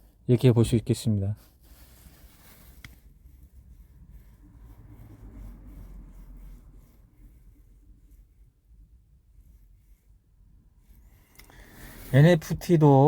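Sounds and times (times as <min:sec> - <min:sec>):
faint rustling: 0:01.4 - 0:10.2.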